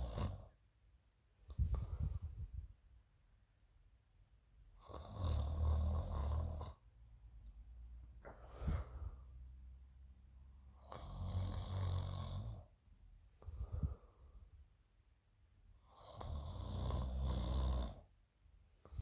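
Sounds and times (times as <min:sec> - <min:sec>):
breath sound: 0:01.5 - 0:02.7, 0:08.2 - 0:09.4, 0:13.4 - 0:14.6
person snoring: 0:04.8 - 0:06.8, 0:10.8 - 0:12.7, 0:16.0 - 0:18.0.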